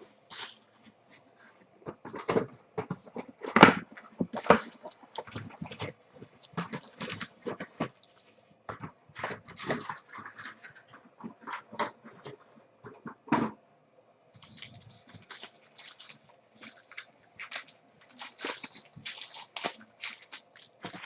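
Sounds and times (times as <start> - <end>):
plastic wrappers tearing and crinkling: 4.4 - 8.3, 14.4 - 21.0
cards being handled: 14.4 - 21.0.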